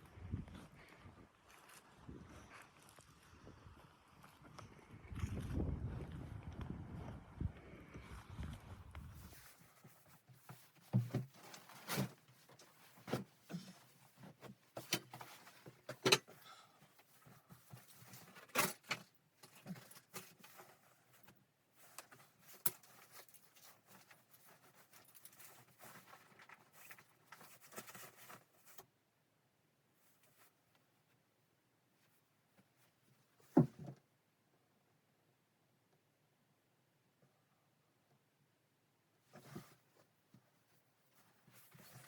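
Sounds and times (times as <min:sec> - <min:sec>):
objects being handled: 0:09.0 - 0:28.9, 0:39.2 - 0:42.0.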